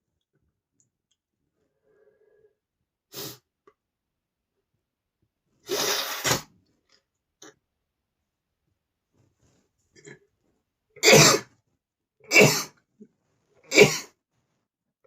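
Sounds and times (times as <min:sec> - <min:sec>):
man sneezing: 0:11.0 - 0:11.4, 0:12.3 - 0:12.7, 0:13.7 - 0:14.1.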